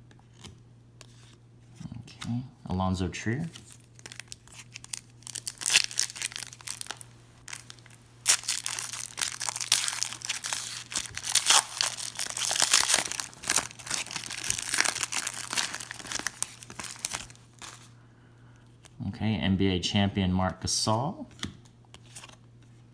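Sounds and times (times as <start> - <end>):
faint low hum: 0.0 - 22.9
cards being flipped through: 0.1 - 1.4, 3.5 - 17.9, 21.3 - 22.4
wrapper crinkling: 3.6 - 18.0.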